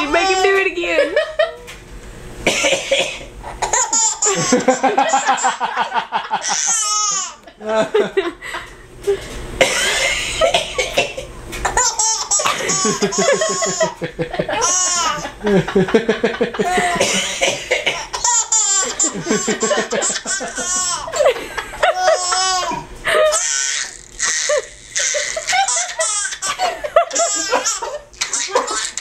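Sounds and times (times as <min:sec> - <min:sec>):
man coughing: 0:02.5 - 0:03.9, 0:09.6 - 0:11.3, 0:16.6 - 0:18.3
baby laughing: 0:03.5 - 0:05.6, 0:06.4 - 0:07.5, 0:11.6 - 0:15.5, 0:16.6 - 0:17.3, 0:18.0 - 0:29.0.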